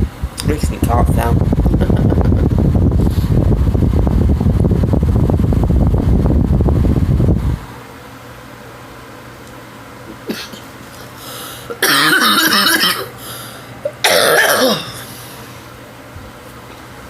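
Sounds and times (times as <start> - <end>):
woman coughing hard: 10.2 - 10.7, 11.7 - 13.2, 13.9 - 15.1.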